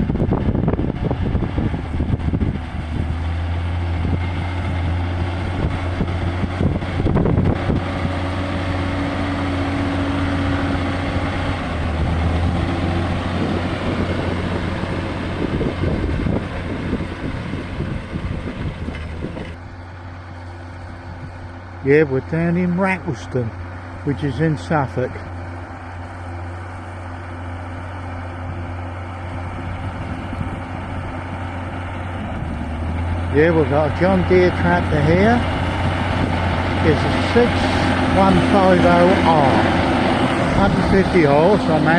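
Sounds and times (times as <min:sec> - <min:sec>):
tractor diesel engine running: 0:00.0 - 0:41.9.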